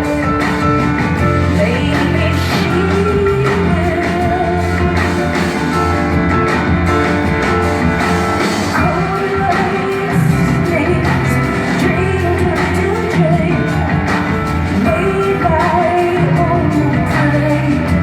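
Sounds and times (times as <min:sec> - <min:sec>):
band playing live: 0:00.0 - 0:18.0
woman singing: 0:01.2 - 0:05.7, 0:08.4 - 0:18.0.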